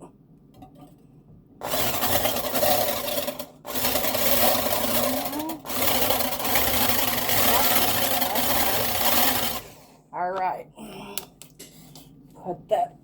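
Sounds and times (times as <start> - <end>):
eggs beaten in a bowl: 1.6 - 9.9.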